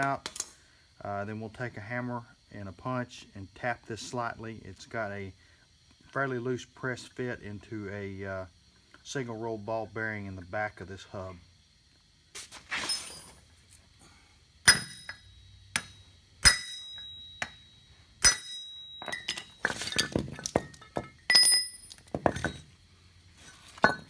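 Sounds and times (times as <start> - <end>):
hammer striking steel punch: 14.6 - 17.6, 18.2 - 19.4
light metal clinks and knocks: 14.6 - 22.8, 23.4 - 24.0.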